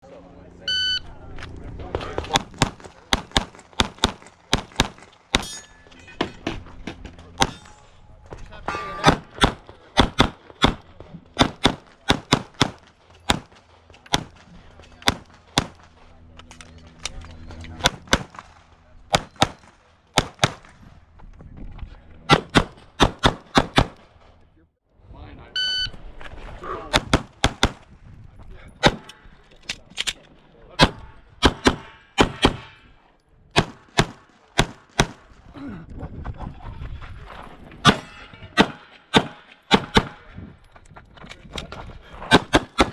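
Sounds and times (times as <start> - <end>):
pistol shots: 2.3 - 5.5, 9.0 - 14.4, 15.0 - 15.9, 17.8 - 20.8, 22.3 - 24.1, 26.9 - 27.8, 28.8 - 29.2, 30.8 - 32.8, 33.6 - 35.3, 37.9 - 40.3, 42.3 - 42.9.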